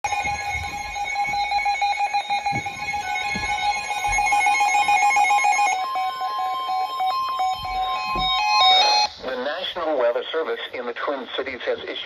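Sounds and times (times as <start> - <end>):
rapidly pulsing electronic alarm beep: 0.0 - 9.2.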